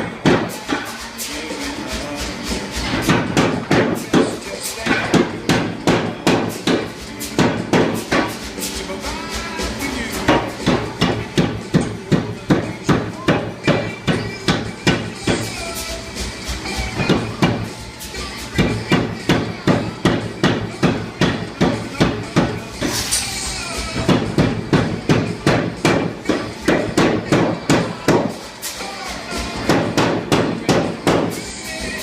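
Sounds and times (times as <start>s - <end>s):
power hammer striking hot steel: 2.9s - 8.4s, 10.2s - 15.6s, 18.5s - 23.4s, 24.0s - 28.4s, 29.6s - 31.4s.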